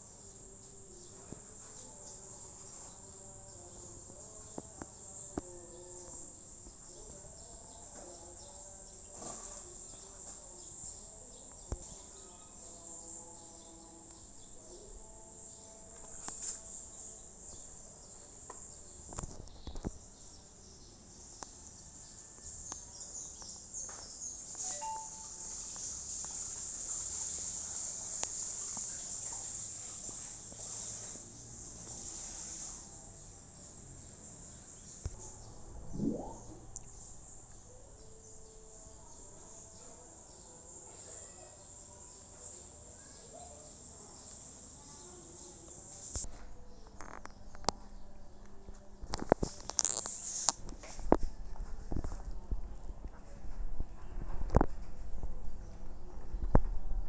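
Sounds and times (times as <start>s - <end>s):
insects trilling: 22.4s - 32.8s.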